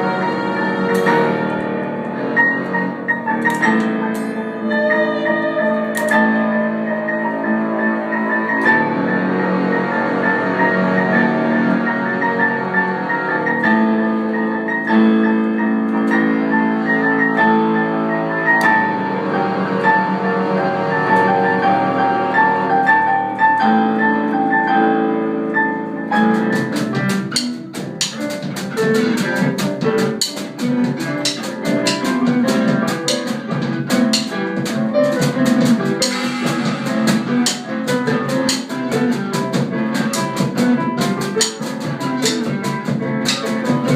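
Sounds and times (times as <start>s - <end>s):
band playing instrumental music: 0.0s - 15.0s, 26.0s - 43.9s
rapid drum hits: 26.2s - 43.9s.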